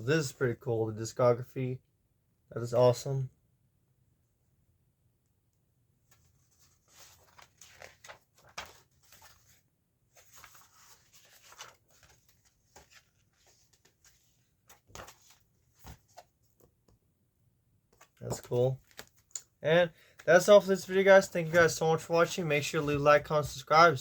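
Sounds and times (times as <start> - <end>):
paper rustling: 6.1 - 16.7, 17.9 - 19.4, 20.1 - 23.7.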